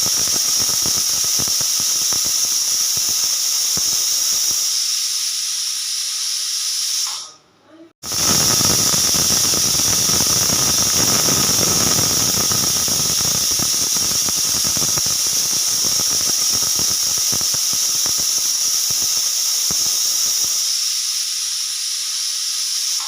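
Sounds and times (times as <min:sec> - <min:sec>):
crackling rattle: 0:00.0 - 0:04.8, 0:08.0 - 0:20.7
pressure cooker whistle: 0:00.0 - 0:07.4, 0:08.0 - 0:23.0.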